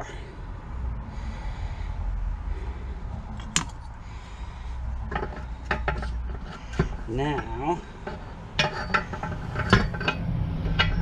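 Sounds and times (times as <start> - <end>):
metal engine parts clicking: 3.4 - 3.9, 5.0 - 11.0.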